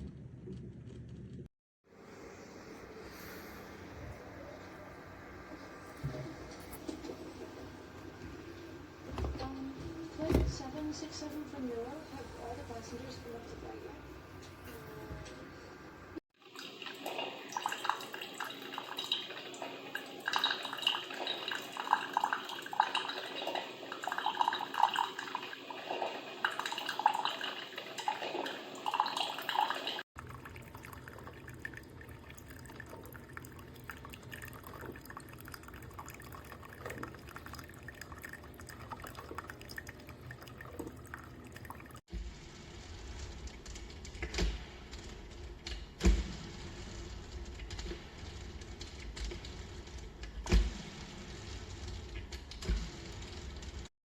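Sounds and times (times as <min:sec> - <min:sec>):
coffee percolator gurgling: 0:01.9 - 0:15.6, 0:16.4 - 0:42.0.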